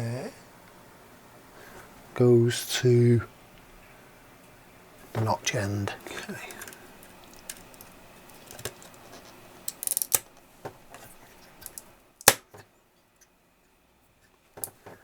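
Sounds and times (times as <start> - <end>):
chip pins clicking and scraping: 5.1 - 12.6
chip snapping into socket: 11.6 - 12.5.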